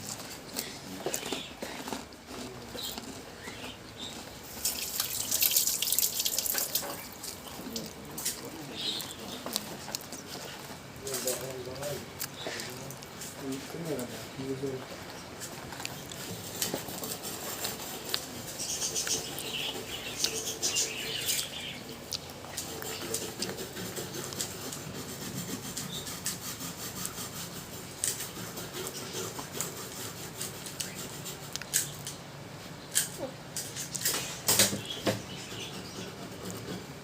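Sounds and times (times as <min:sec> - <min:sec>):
scraping and rubbing on burner: 0:16.2 - 0:21.2, 0:22.3 - 0:31.5, 0:35.4 - 0:37.0.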